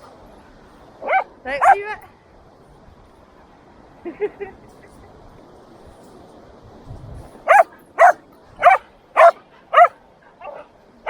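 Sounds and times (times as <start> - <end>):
dog barking: 1.0 - 1.8, 7.5 - 10.7.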